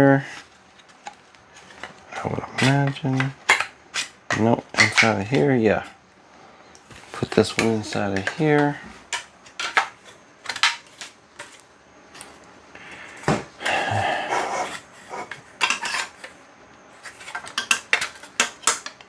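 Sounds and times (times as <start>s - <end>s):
scraping and rustling: 0.2s - 19.0s
plastic parts clicking together: 4.3s - 5.4s, 6.7s - 11.6s.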